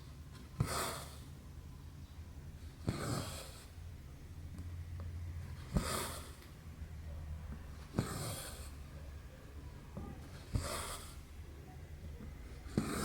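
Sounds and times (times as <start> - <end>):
needle poking through fabric: 12.7 - 13.0.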